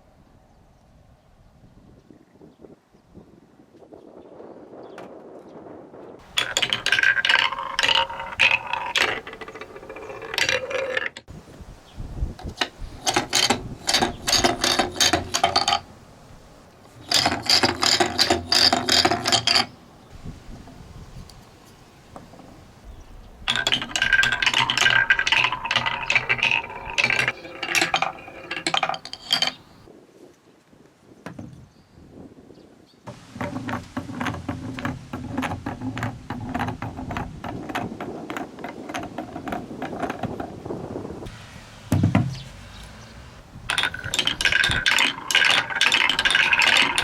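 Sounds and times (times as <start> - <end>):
marbles rattling down a track: 6.2 - 11.3, 12.4 - 15.9, 16.9 - 19.8, 23.5 - 29.9, 43.7 - 47.0.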